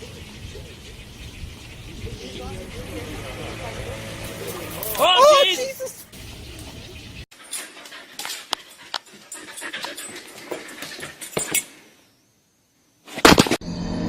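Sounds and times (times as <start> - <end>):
clicks and scuffs: 4.3 - 6.7
dog panting: 7.4 - 11.2.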